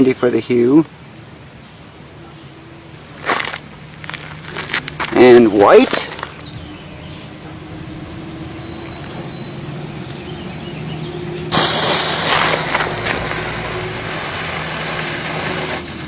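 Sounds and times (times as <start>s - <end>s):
smoke firework hissing: 11.5s - 16.0s.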